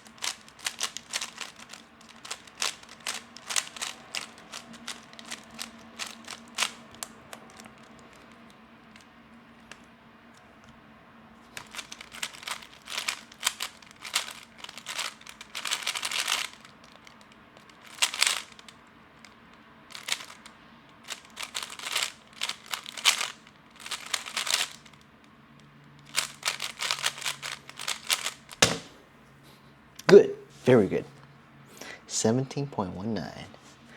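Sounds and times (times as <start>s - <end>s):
puzzle cube clicking turns: 0.0s - 9.9s, 11.4s - 25.0s, 26.0s - 29.0s.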